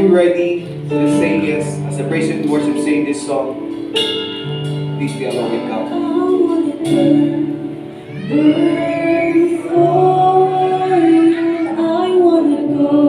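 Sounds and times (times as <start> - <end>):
instrumental accompaniment: 0.0 - 13.0
group singing slow worship song: 5.8 - 13.0.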